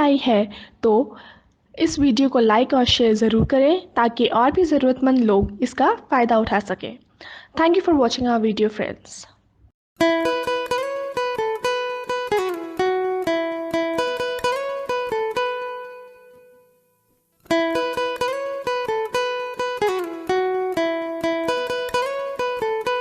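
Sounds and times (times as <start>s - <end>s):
plucked-string melody: 10.0s - 23.0s.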